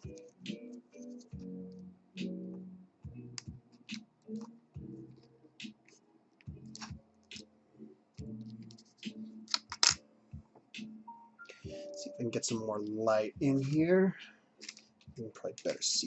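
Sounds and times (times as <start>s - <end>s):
quiet guitar music: 0.0s - 5.7s.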